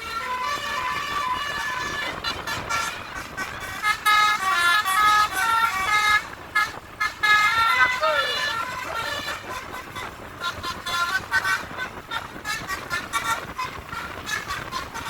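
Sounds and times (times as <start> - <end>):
musical air horns playing a tune: 0.0 - 15.0.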